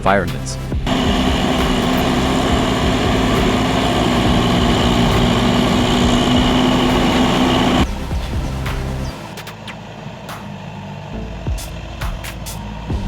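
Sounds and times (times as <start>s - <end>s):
diesel engine running: 0.8s - 9.4s.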